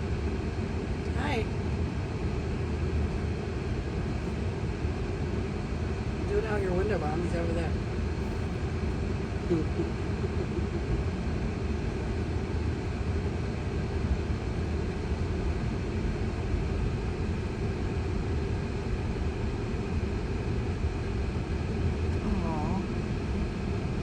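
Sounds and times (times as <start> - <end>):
car cabin road noise: 6.3 - 12.2.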